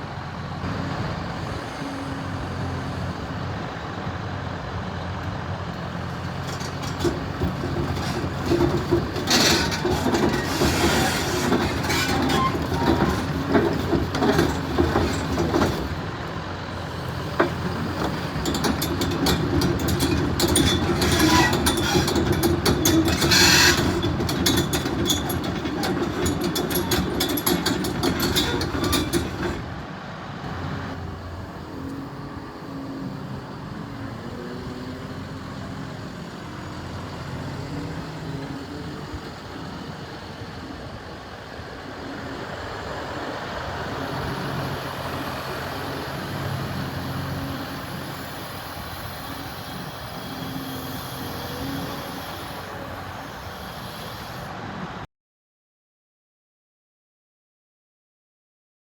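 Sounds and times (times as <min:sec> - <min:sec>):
excavator diesel engine: 0:00.0 - 0:55.0
metallic clanking and rattling: 0:06.2 - 0:29.8.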